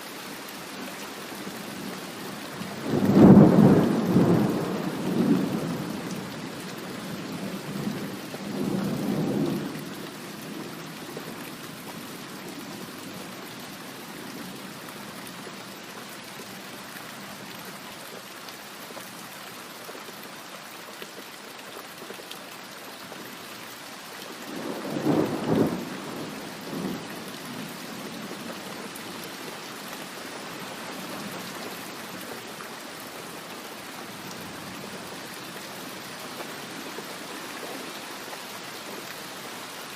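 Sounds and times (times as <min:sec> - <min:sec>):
steady rain falling: 0:00.0 - 0:39.9
thunder rumbling: 0:02.7 - 0:05.9.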